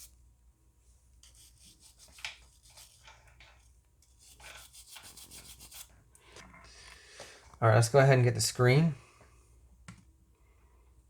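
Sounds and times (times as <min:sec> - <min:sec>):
rubbing strokes on circuit board: 0:04.2 - 0:05.9.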